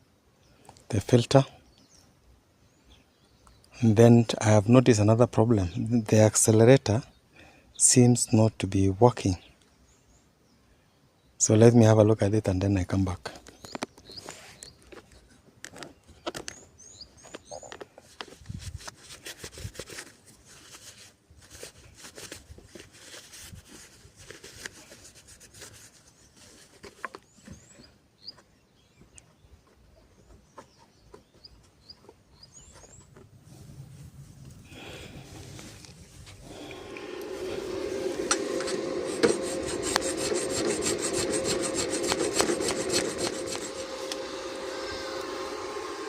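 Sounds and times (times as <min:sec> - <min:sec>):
birds chirping: 0:12.9 - 0:17.9, 0:27.1 - 0:33.2
rubbing scraping noise: 0:35.4 - 0:45.8.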